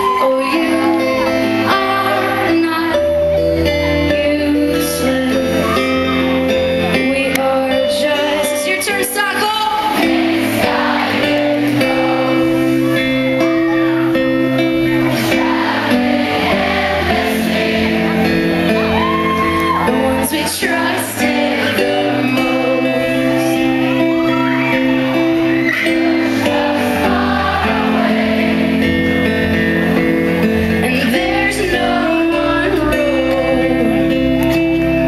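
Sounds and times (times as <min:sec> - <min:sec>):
woman singing: 0:00.0 - 0:13.0, 0:19.6 - 0:24.9, 0:30.8 - 0:34.6
acoustic guitars strumming: 0:00.0 - 0:35.0.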